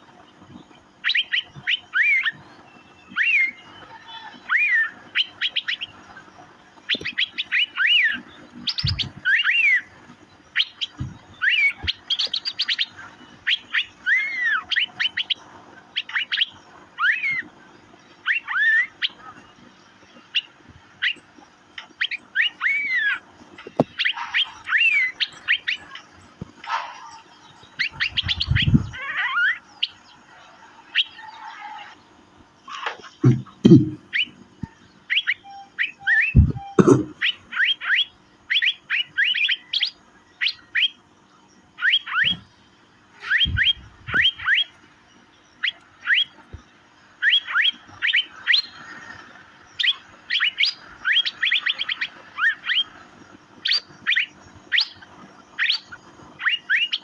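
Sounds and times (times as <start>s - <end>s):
bird ticking and whistling: 0.7s - 30.0s, 33.0s - 41.0s, 41.8s - 42.6s, 43.2s - 44.8s, 45.6s - 57.0s
low thumps: 33.2s - 34.0s, 36.4s - 37.1s.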